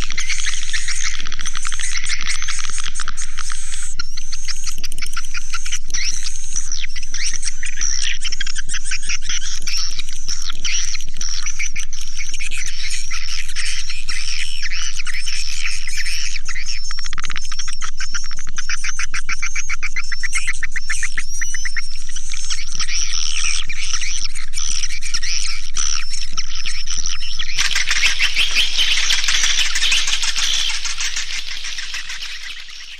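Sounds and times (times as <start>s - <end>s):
fast buzzy trill: 27.6s - 32.9s
recorded swiftlet chirping: 27.6s - 32.9s.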